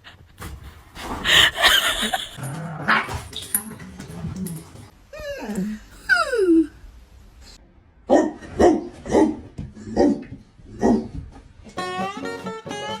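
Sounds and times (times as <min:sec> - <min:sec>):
dog barking: 0:08.1 - 0:10.2, 0:10.8 - 0:11.1
music: 0:11.8 - 0:13.0.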